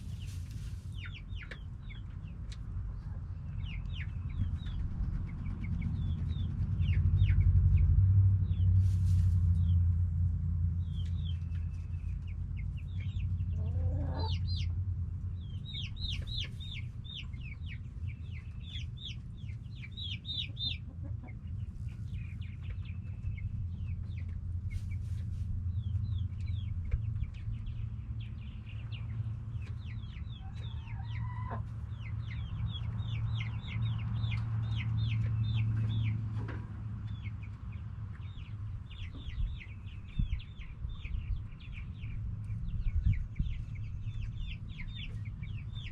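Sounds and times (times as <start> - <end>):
low rumble: 0.0 - 45.9
hens clucking and calling: 13.4 - 14.5, 19.5 - 23.2, 29.0 - 32.2.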